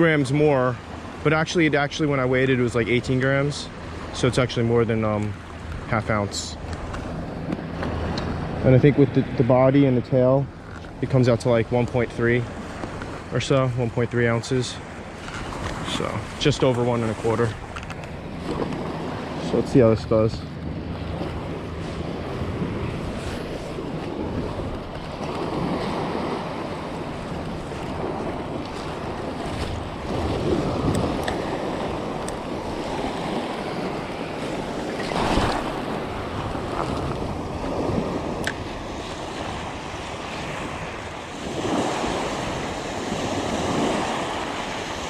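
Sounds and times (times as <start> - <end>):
surf washing onto shore: 0.0 - 45.0
wind on microphone: 15.1 - 45.0.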